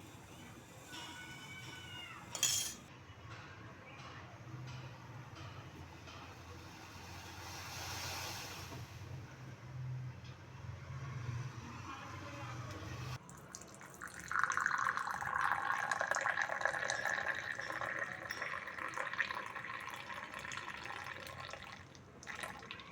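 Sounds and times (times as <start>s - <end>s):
liquid pouring into cup: 13.2s - 22.9s.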